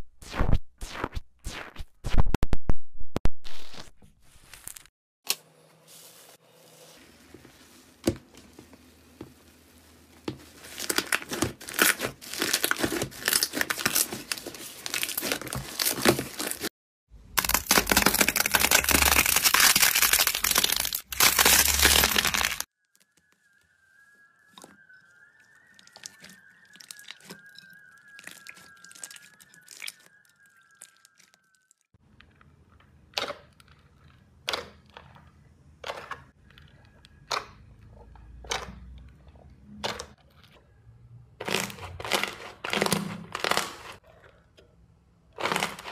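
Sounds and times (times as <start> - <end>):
slime crackling and crinkling: 9.3 - 16.7, 17.4 - 22.7, 25.8 - 31.6, 41.4 - 44.0, 45.4 - 45.9
faint high wavering tone: 22.8 - 31.9.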